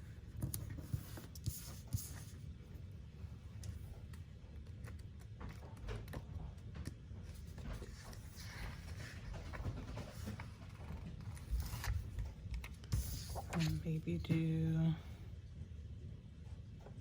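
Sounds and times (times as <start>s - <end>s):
paper stickers rustling and tapping: 3.6s - 14.7s.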